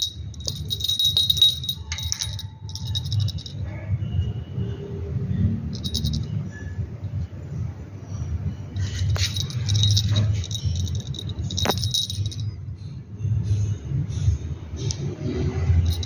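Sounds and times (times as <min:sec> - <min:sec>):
small jingle bell jingling: 0:00.0 - 0:04.3, 0:05.6 - 0:06.7, 0:08.7 - 0:12.9, 0:14.8 - 0:16.0.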